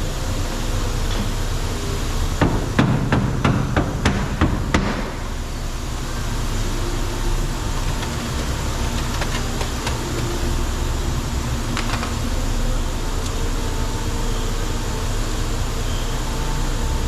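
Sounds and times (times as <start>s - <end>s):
steady low hum: 0.0s - 17.0s
hammer strikes on car panel: 2.4s - 5.3s.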